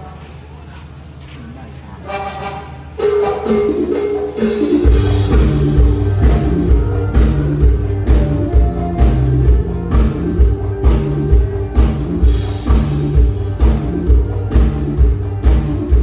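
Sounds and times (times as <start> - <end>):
instrumental band music: 2.1 - 16.0
heavy bass and drums: 2.9 - 16.0.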